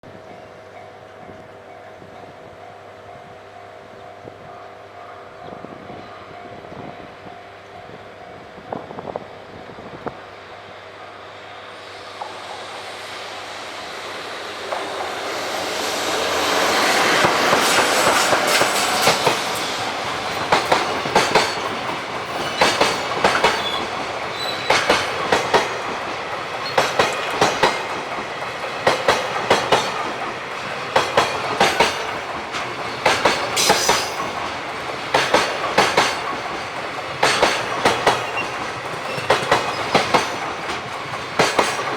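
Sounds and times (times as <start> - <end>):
electric locomotive passing: 0.0 - 41.9
wheels clicking over rail joints: 17.2 - 41.9.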